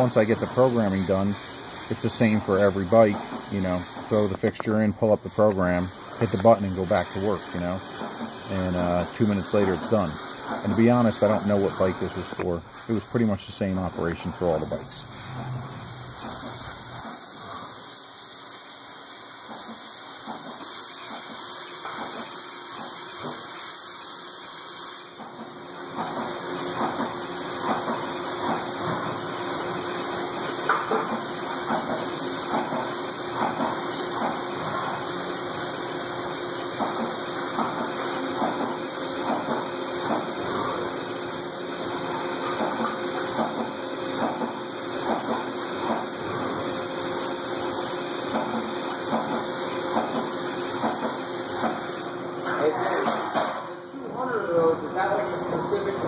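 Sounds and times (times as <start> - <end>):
steady hum: 0.0 - 17.8
hiss of coolant spray: 0.0 - 52.4
mill drilling and tapping: 19.6 - 23.6, 25.2 - 40.9, 42.0 - 46.6, 48.2 - 51.9.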